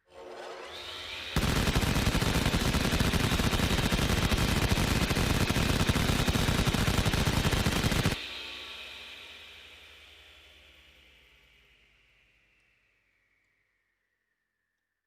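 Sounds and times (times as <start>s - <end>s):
rapid automatic gunfire: 1.4s - 8.2s.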